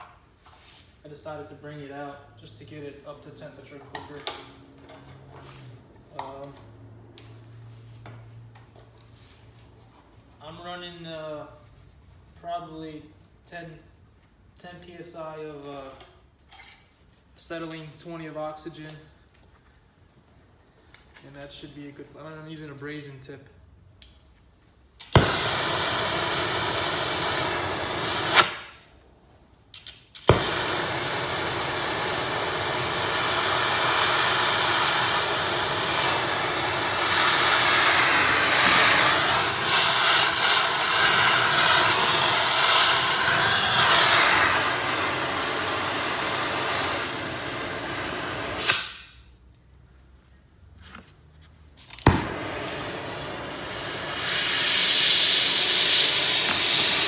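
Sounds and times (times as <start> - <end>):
torch flame hissing: 25.1 - 29.0, 30.3 - 49.2, 52.0 - 57.0
torch igniting with a pop: 25.1 - 29.0, 30.3 - 49.2, 52.0 - 57.0.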